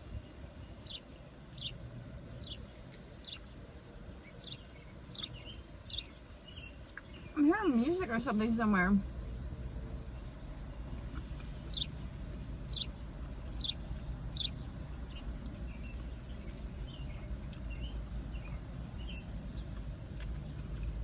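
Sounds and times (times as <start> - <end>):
steady low rumble: 0.0 - 21.0
bird chirps: 0.6 - 3.6, 4.2 - 8.0, 11.2 - 20.6.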